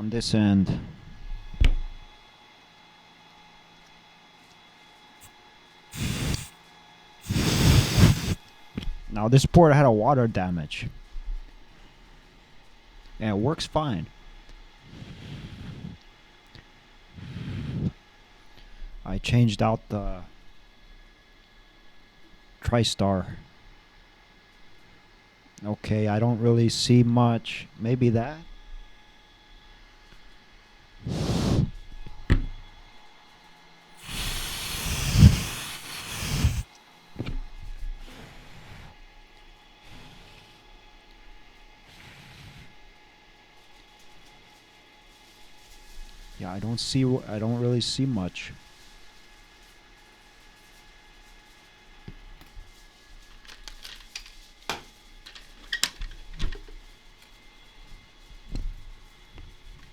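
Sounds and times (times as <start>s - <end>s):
gas spray hissing: 5.9s - 6.5s, 7.2s - 8.4s, 14.9s - 16.0s, 17.2s - 17.9s, 31.0s - 31.7s, 34.0s - 36.7s.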